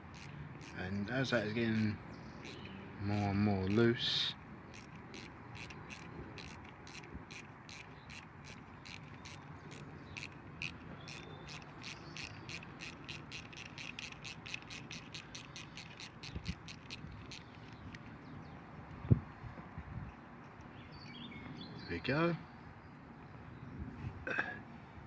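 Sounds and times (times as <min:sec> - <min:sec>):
ratchet wrench clicking: 0:00.0 - 0:03.9, 0:04.7 - 0:18.1.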